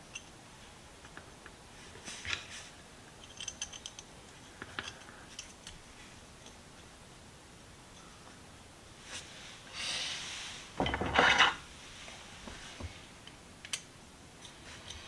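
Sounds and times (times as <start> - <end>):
metal parts clicking and clinking: 3.2 - 4.1, 10.8 - 11.6.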